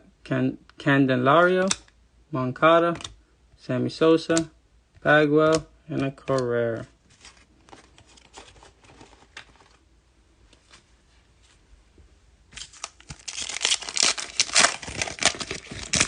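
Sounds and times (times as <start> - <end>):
wrapper tearing and crinkling: 12.6 - 16.0.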